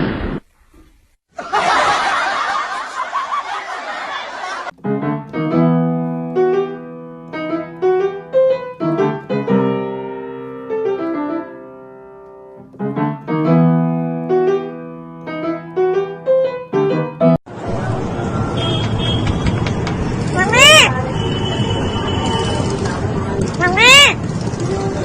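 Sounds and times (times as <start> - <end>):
piano melody: 4.7 - 17.6.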